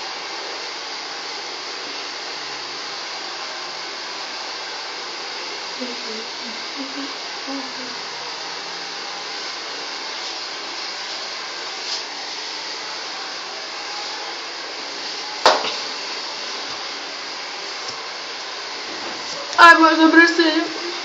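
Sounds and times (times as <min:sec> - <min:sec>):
hair dryer blowing: 0:00.0 - 0:21.0
sharp knock: 0:15.5 - 0:15.8.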